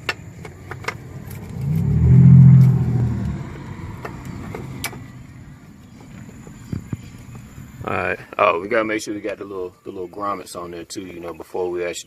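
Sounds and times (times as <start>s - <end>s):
passing car engine rumble: 0.0s - 8.2s.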